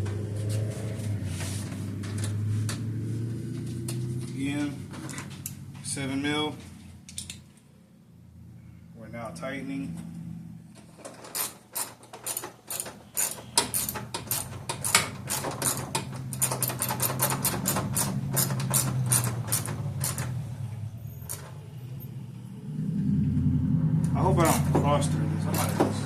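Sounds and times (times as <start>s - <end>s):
ratchet wrench clicking: 11.4s - 20.2s
low steady hum: 19.7s - 24.9s.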